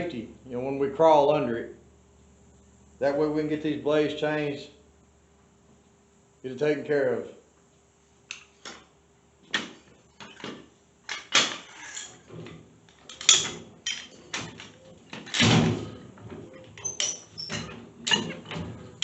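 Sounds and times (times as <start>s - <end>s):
metal jack clanking and clicking: 13.1s - 15.6s, 16.6s - 19.0s.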